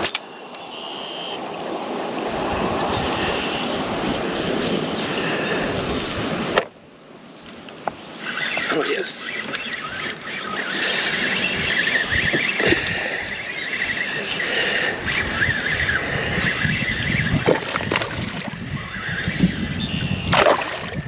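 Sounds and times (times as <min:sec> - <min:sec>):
fishing reel whirring: 0:02.2 - 0:06.5, 0:08.0 - 0:21.0
water sloshing and splashing: 0:17.0 - 0:18.6, 0:20.3 - 0:21.0.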